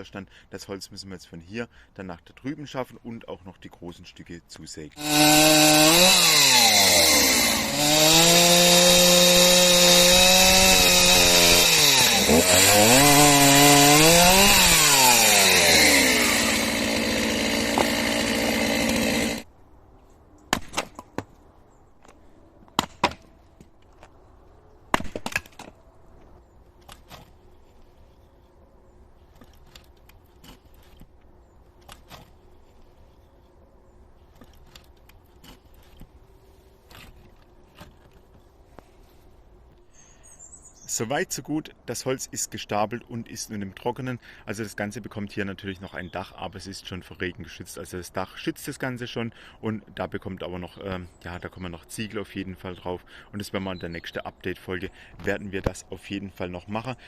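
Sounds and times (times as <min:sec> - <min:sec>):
chainsaw cutting logs: 0:05.0 - 0:19.5.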